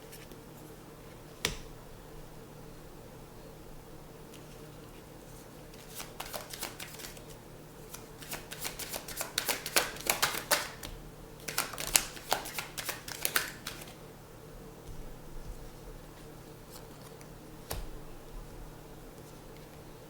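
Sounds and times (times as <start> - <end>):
cards being shuffled: 5.7 - 14.0, 16.7 - 17.9.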